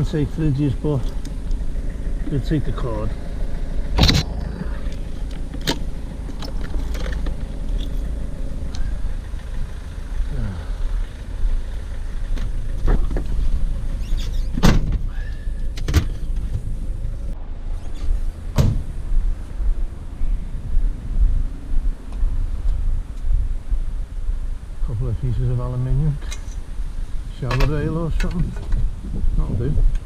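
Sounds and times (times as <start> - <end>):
low vehicle rumble: 0.0 - 30.0
sharp knocks and rattles: 12.2 - 15.1.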